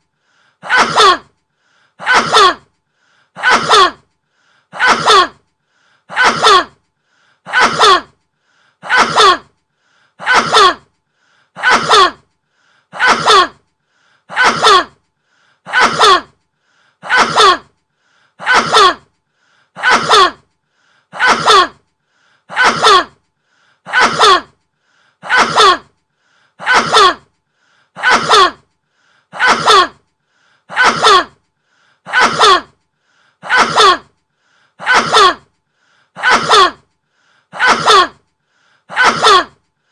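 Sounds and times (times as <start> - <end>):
man sneezing: 0.6 - 1.3, 2.0 - 2.6, 3.4 - 4.0, 4.8 - 5.4, 6.1 - 6.7, 7.5 - 8.1, 8.8 - 9.4, 10.2 - 10.8, 11.6 - 12.2, 13.0 - 13.6, 14.3 - 14.9, 15.7 - 16.3, 17.0 - 17.7, 18.4 - 19.0, 19.8 - 20.4, 21.2 - 21.8, 22.5 - 23.1, 23.9 - 24.5, 25.2 - 25.9, 26.6 - 27.2, 28.0 - 28.6, 29.4 - 30.0, 30.7 - 31.3, 32.1 - 32.7, 33.4 - 34.1, 34.8 - 35.4, 36.2 - 36.8, 37.6 - 38.2, 38.9 - 39.5.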